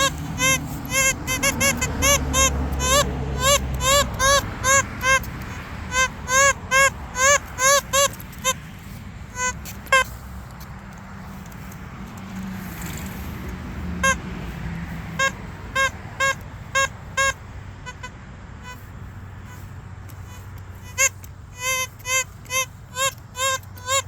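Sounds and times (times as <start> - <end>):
metal detector beeps: 0.0 - 8.6, 9.3 - 10.2, 15.2 - 18.8, 20.2 - 24.0.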